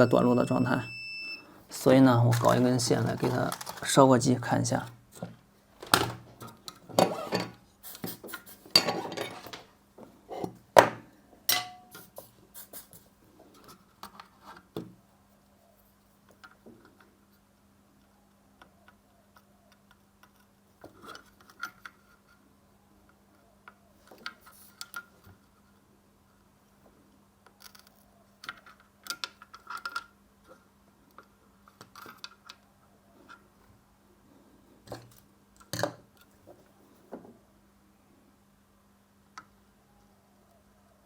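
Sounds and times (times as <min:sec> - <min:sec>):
faint steady hum: 0:00.0 - 0:41.0
tools clattering on a workbench: 0:06.9 - 0:07.6, 0:08.7 - 0:09.7, 0:10.4 - 0:12.2.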